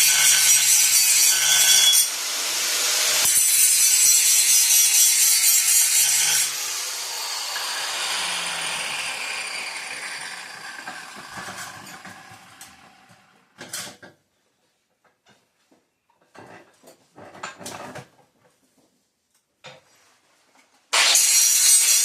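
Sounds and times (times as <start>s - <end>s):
angle grinder spinning down: 1.3s - 13.6s
metal knocks and scrapes: 10.8s - 14.0s.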